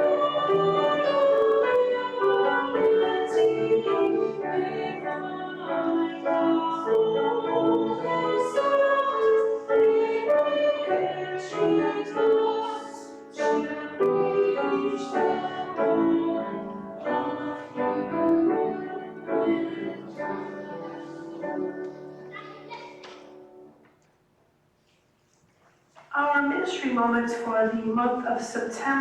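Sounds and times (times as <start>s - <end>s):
church singing with instruments: 0.0s - 22.3s.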